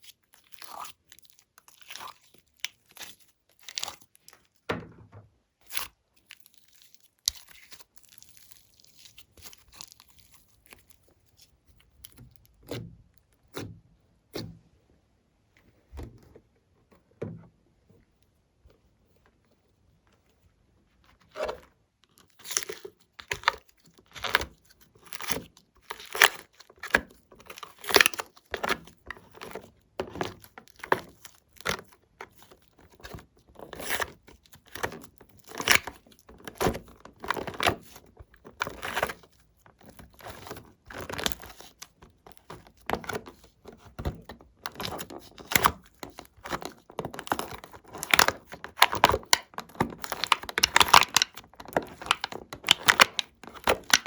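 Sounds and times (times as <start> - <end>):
slime kneaded by hand: 5.6 - 14.8, 21.0 - 54.0.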